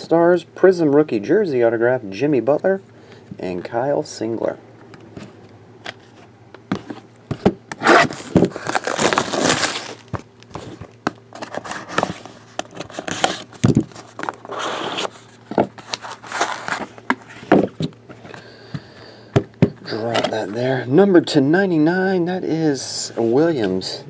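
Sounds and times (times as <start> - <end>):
packaging crinkling and tearing: 7.7 - 17.4.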